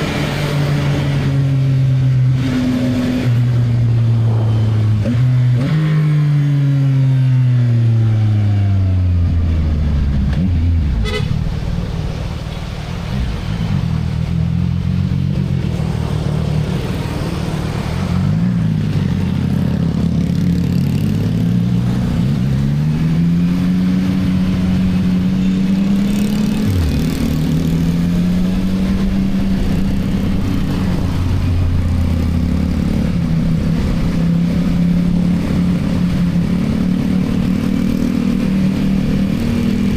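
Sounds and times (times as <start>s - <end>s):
motorcycle engine accelerating: 13.2s - 39.9s.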